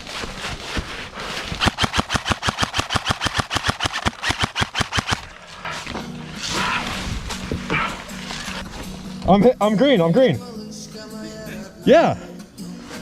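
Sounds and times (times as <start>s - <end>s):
airsoft gun full-auto burst: 1.6s - 5.4s.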